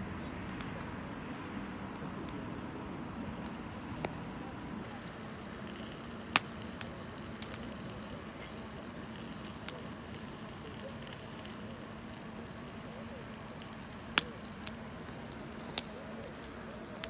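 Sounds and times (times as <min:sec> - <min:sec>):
campfire hissing and crackling: 0:04.8 - 0:17.0.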